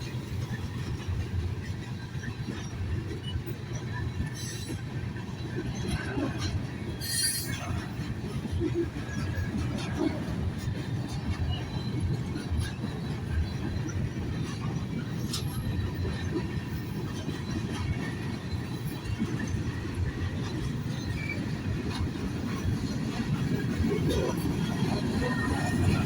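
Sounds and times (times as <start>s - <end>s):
train rumbling: 0.0s - 26.0s.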